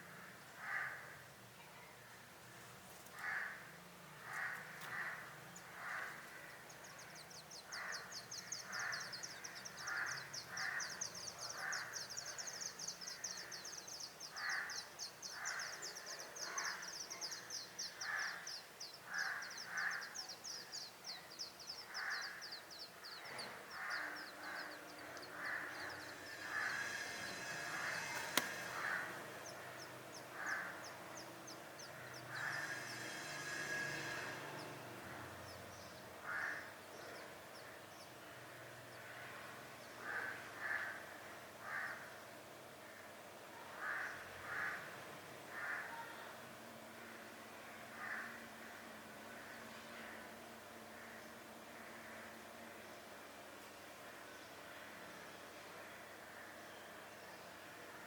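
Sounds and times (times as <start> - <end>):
harsh bird calls: 3.2 - 46.4
nestlings begging chatter: 4.2 - 41.0.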